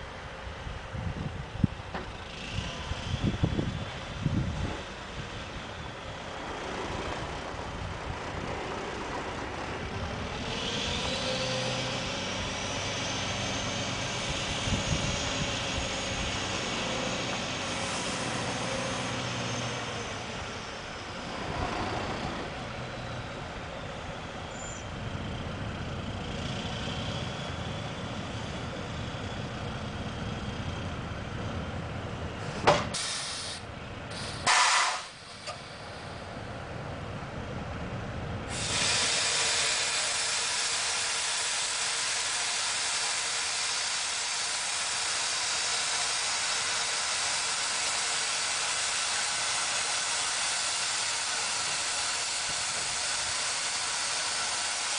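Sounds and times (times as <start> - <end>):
truck engine running: 0.0 - 54.9
air brake hisses: 32.4 - 36.3, 38.5 - 54.9.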